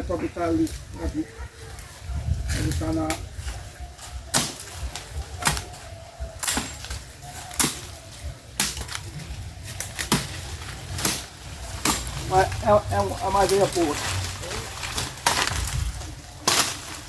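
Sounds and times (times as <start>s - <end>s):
axe chopping wood: 4.3s - 5.7s, 6.4s - 7.9s, 8.6s - 9.1s, 9.7s - 12.3s, 16.4s - 17.0s.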